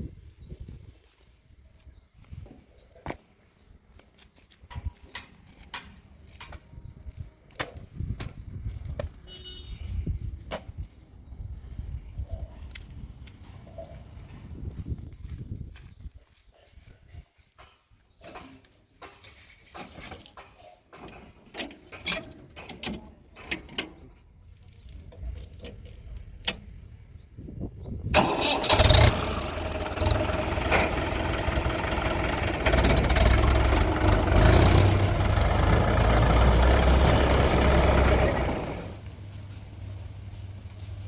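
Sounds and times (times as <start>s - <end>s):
diesel engine starting and revving: 28.0s - 41.0s.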